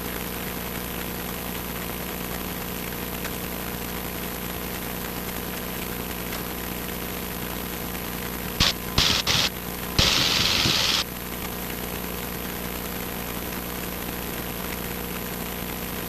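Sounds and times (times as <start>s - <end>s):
loud hiss bursts: 8.6s - 11.0s.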